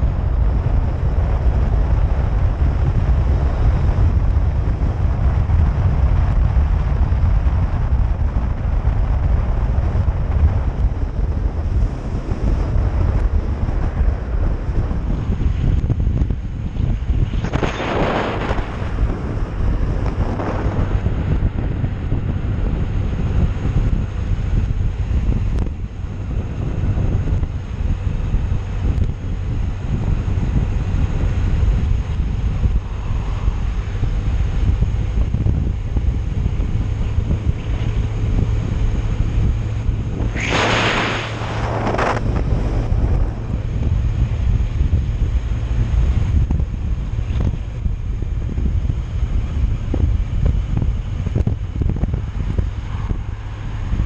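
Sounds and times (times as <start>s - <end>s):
steady low rumble: 0.0s - 54.0s
wind buffeting microphone: 0.0s - 54.0s
hissing rush: 40.1s - 43.7s.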